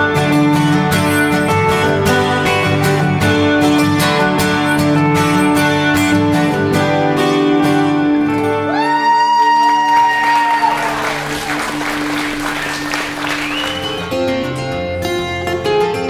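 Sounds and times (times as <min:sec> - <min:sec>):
plucked string music: 0:00.0 - 0:08.7, 0:13.1 - 0:16.0
audience applauding and cheering: 0:08.6 - 0:14.4.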